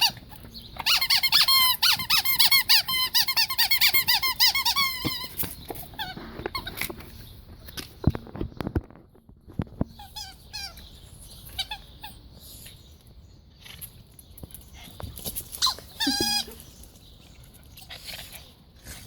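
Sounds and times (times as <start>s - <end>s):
squeaky dog toy squeaking: 0.0s - 6.9s, 9.9s - 12.3s, 15.6s - 16.6s.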